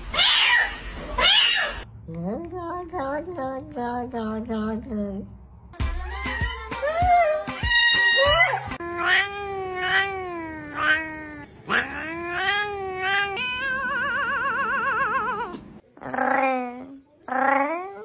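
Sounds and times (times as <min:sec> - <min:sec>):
cat yowling: 0:00.1 - 0:01.8, 0:06.2 - 0:16.6.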